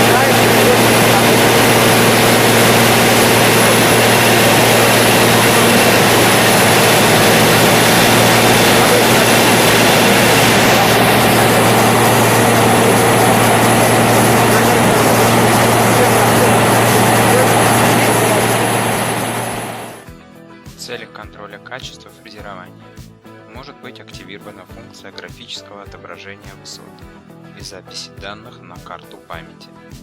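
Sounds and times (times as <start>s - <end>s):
road milling machine droning: 0.0s - 20.1s.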